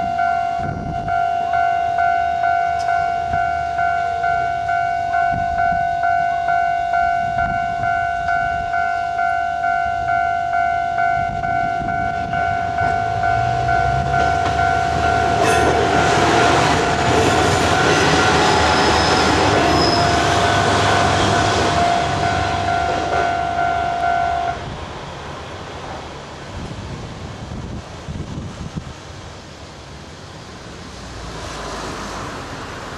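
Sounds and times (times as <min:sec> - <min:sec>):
level-crossing warning bell ringing: 0:00.0 - 0:24.6
diesel railcar engine rumble: 0:00.0 - 0:32.9
train passing over crossing: 0:00.0 - 0:32.9.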